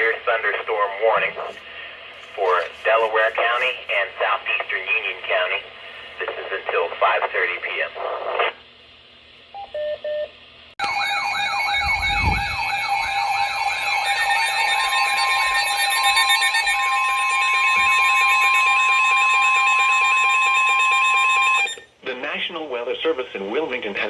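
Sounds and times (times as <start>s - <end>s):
steady alert tones: 10.8s - 21.8s
wavering siren-like tone: 10.8s - 21.8s.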